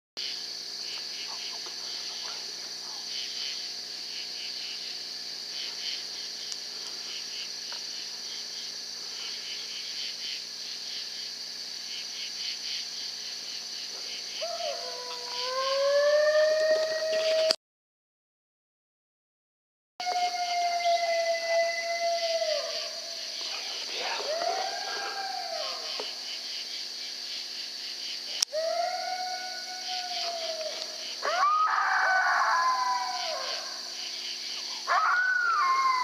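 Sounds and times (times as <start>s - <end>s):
crickets and insects trilling: 0.2s - 17.6s, 20.0s - 36.0s
drawn-out howl-like call: 14.4s - 17.6s, 20.0s - 23.2s, 23.9s - 26.0s, 28.5s - 33.8s, 34.7s - 36.0s.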